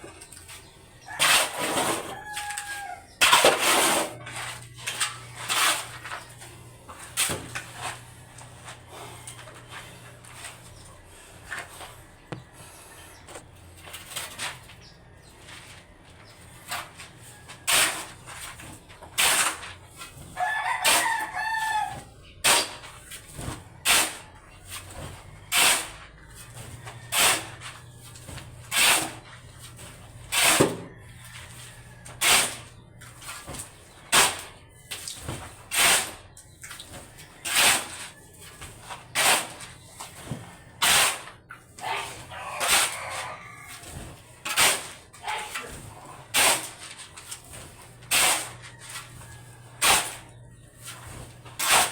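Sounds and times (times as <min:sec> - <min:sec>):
rooster crowing: 0:01.1 - 0:03.2, 0:20.4 - 0:22.1, 0:41.8 - 0:44.0, 0:48.5 - 0:49.9.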